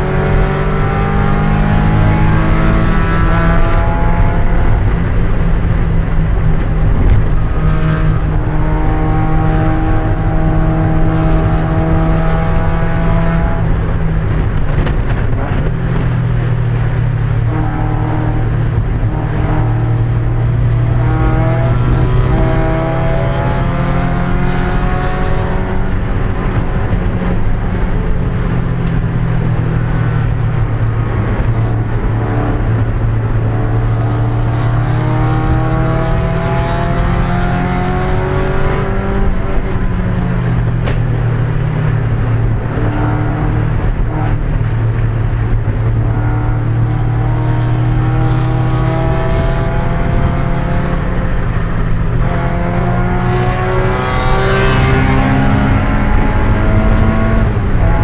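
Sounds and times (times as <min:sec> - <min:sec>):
racing car engine revving: 0:00.0 - 0:58.0
steady rushing noise: 0:00.0 - 0:58.0.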